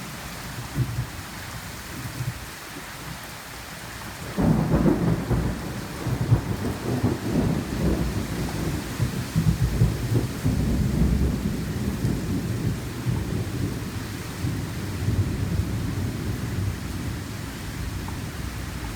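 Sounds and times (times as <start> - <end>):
rain hissing: 3.9 - 18.9
thunder rumbling: 4.3 - 18.9.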